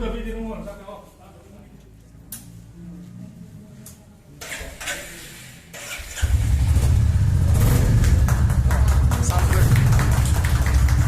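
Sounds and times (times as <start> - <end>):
motorcycle engine starting and running: 4.4 - 11.0.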